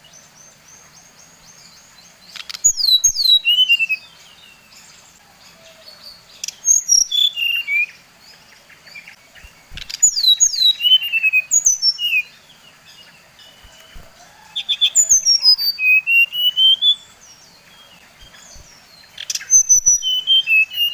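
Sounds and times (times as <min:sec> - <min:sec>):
songbird whistling: 0:02.6 - 0:04.2, 0:06.4 - 0:08.0, 0:09.4 - 0:12.3, 0:13.4 - 0:20.9.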